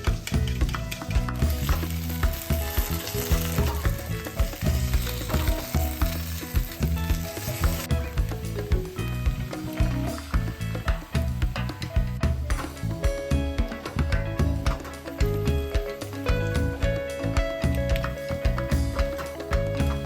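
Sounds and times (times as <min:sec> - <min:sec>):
background music: 0:00.0 - 0:20.0
food sizzling in oil: 0:01.4 - 0:11.2.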